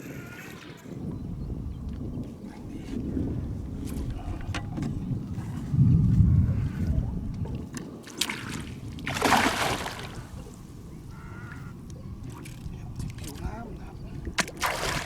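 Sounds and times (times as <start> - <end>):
water splashing beside boat: 1.1 - 15.0
fish thrashing at surface: 8.2 - 10.5.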